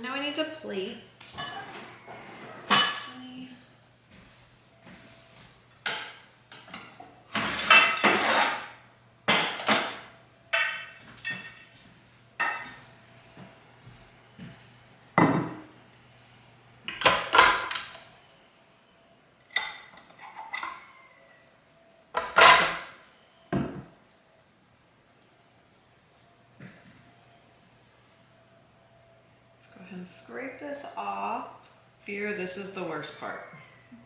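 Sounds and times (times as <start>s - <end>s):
dishes and utensils clattering: 1.3s - 3.2s, 5.7s - 11.8s, 12.4s - 12.9s, 15.2s - 15.7s, 16.8s - 18.0s, 19.5s - 21.4s, 22.2s - 23.0s
faint low hum: 8.7s - 34.0s.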